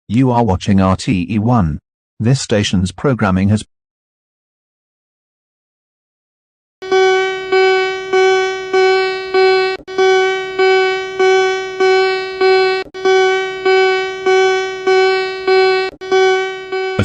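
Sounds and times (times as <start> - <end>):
electronic alert tone strikes: 6.8 - 17.0.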